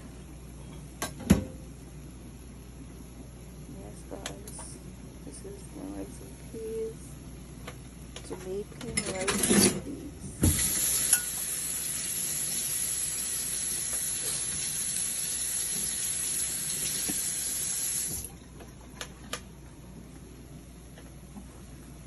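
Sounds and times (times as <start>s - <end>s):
tap water running: 10.4s - 18.4s.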